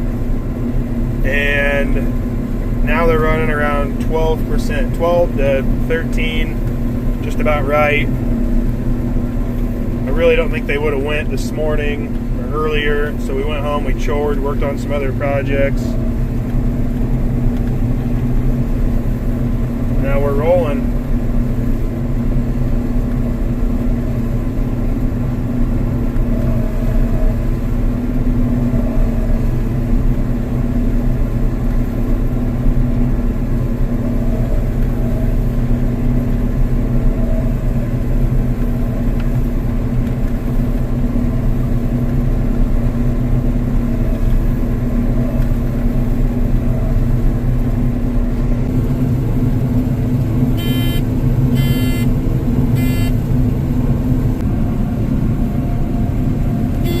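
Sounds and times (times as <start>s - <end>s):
combine harvester engine rumble: 0.0s - 57.0s.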